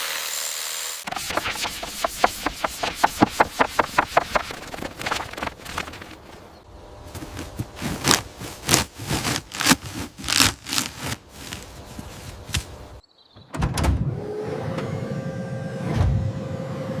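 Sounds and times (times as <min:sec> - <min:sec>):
steady hum: 0:01.0 - 0:13.0.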